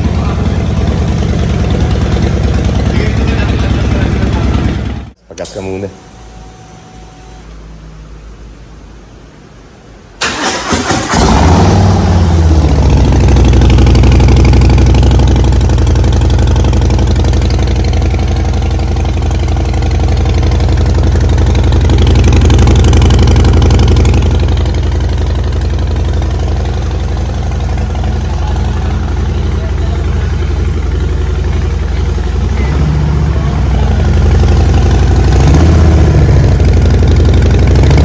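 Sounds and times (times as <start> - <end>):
motorcycle engine idling: 0.0 - 5.2, 11.7 - 38.0
motorcycle starter cranking: 10.2 - 12.2.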